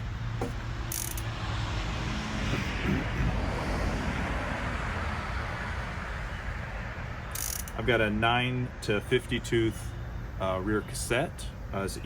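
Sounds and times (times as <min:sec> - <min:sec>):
vehicle passing by: 0:00.0 - 0:07.2.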